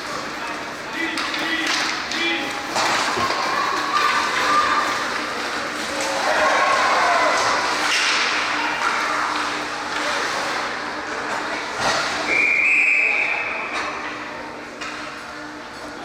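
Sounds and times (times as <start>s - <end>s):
arena crowd voices: 0.0s - 14.7s
referee's whistle: 12.3s - 13.6s.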